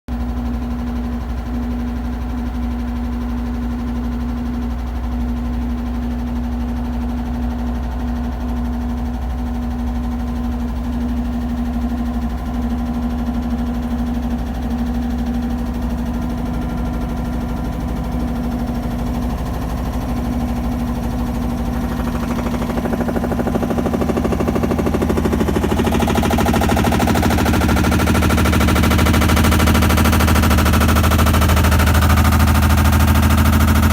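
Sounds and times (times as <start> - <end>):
washing machine humming and rattling: 0.1 - 33.9.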